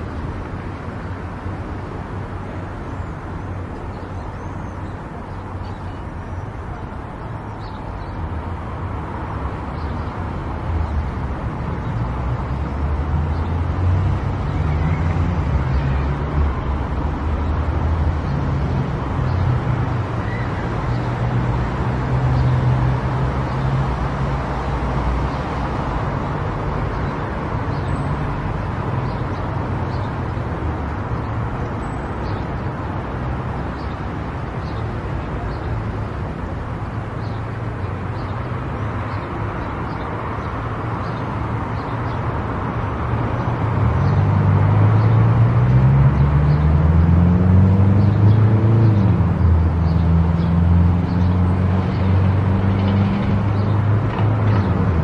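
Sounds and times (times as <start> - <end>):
car engine and tyre rumble: 0.0 - 55.0.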